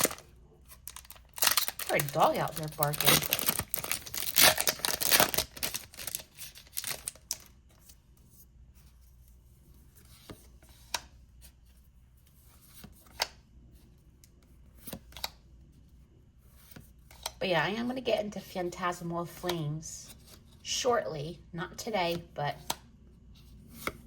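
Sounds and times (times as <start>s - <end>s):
foil wrapper crinkling and tearing: 0.0s - 7.5s.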